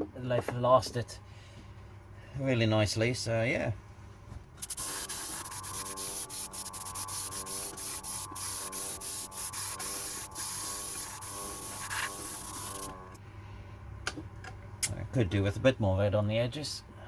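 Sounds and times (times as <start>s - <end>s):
airbrush spraying hiss: 4.6s - 13.0s.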